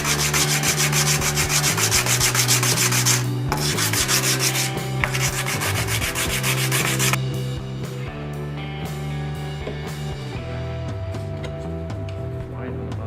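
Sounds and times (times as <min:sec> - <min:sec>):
sanding plexiglass edge: 0:00.0 - 0:07.2.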